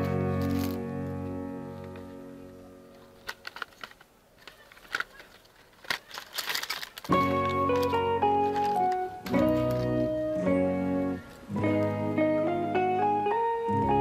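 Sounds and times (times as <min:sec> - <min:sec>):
plucked guitar-like background music: 0:00.0 - 0:03.4, 0:07.1 - 0:14.0
scattered clicks: 0:02.9 - 0:09.9
short rustle: 0:02.9 - 0:10.1.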